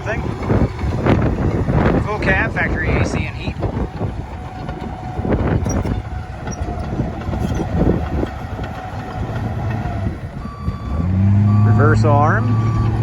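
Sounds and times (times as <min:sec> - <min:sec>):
machine clanks and rattles: 0:00.0 - 0:10.4
bulldozer diesel engine: 0:00.0 - 0:13.0
reverse alarm beeping: 0:10.4 - 0:13.0.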